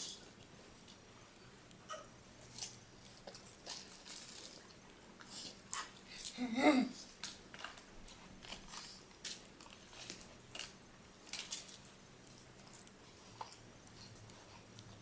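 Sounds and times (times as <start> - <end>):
dog chewing crunchy snack: 2.4 - 6.4, 7.1 - 15.0.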